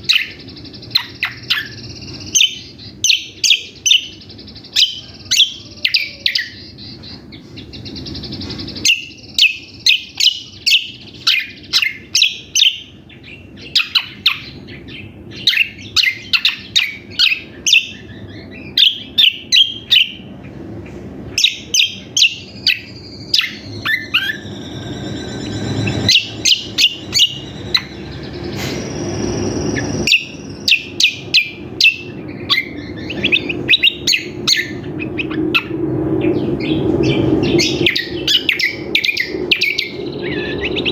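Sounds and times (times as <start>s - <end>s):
bird singing sharp chirps: 21.3s - 40.9s
low rumble: 22.1s - 40.9s.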